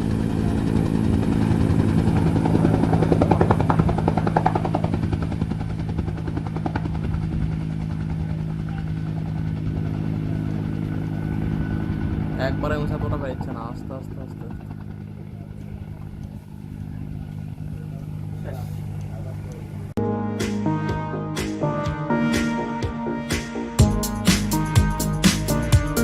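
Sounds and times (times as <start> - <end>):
helicopter engine and rotor: 0.0 - 20.0.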